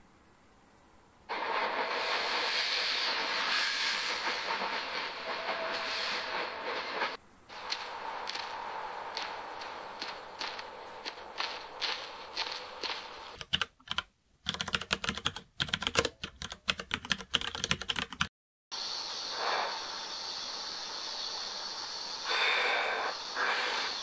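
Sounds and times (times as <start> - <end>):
steady hiss: 0.0 - 13.4, 18.7 - 24.0
rapid uneven clicks: 6.7 - 18.3.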